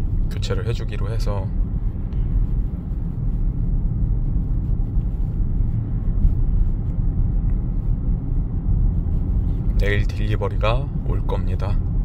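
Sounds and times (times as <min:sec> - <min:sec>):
road and tyre rumble in car cabin: 0:00.0 - 0:12.0.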